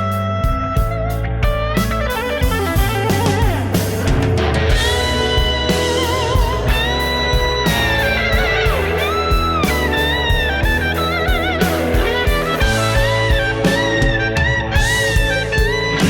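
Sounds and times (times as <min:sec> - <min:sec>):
bass line: 0:00.0 - 0:16.0
electric guitar lead with bent notes: 0:00.0 - 0:16.0
regular drum beat: 0:00.4 - 0:16.0.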